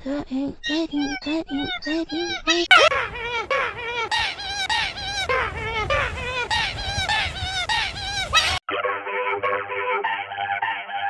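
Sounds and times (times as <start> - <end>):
processed voice chanting syllables: 2.7 - 8.6.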